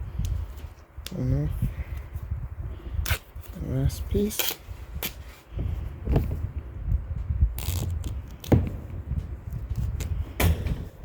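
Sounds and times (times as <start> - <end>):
tape rubbing and handling noise: 0.0 - 10.3
duct tape tearing: 4.3 - 5.2, 7.6 - 8.6.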